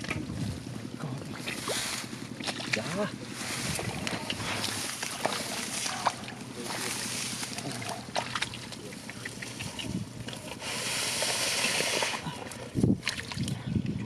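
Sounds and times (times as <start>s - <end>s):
muddy water sloshing: 0.0s - 14.0s
rushing hiss: 10.6s - 12.2s.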